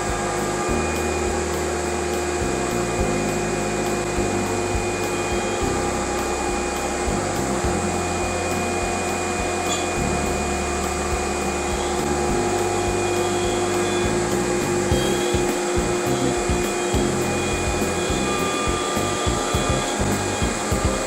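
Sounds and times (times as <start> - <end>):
dust collector rushing: 0.0 - 21.0
router spindle tone: 0.0 - 21.0.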